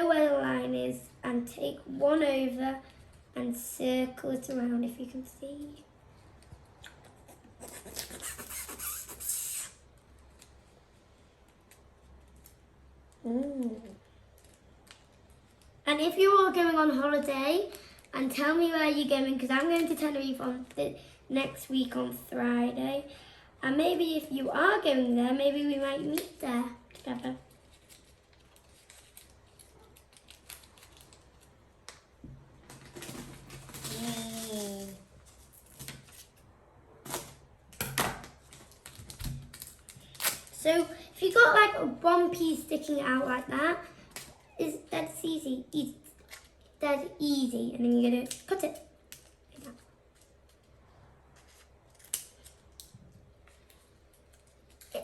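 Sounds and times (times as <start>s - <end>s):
paper and tape rustling: 6.2s - 12.6s, 26.0s - 32.0s, 32.6s - 37.4s, 38.2s - 41.5s, 48.2s - 55.0s
tape rubbing on paper: 7.1s - 9.9s.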